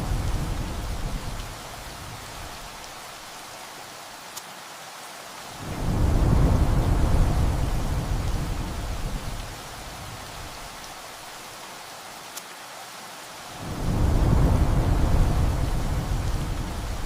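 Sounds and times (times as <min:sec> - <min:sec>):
thunder rumbling: 0:00.0 - 0:02.5, 0:05.6 - 0:10.7, 0:13.6 - 0:17.0
heavy rain on a tin roof: 0:00.0 - 0:17.0.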